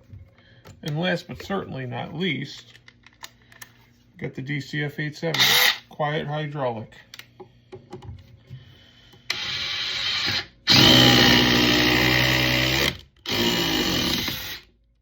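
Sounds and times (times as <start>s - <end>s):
impact driver running: 9.3s - 14.7s.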